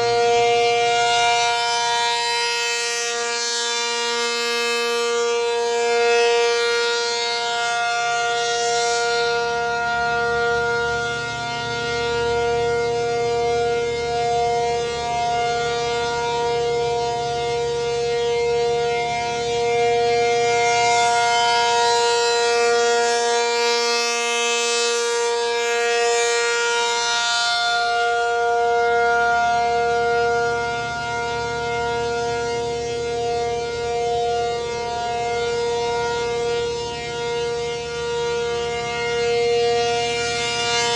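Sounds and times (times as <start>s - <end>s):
dual-tone siren: 0.0s - 40.9s.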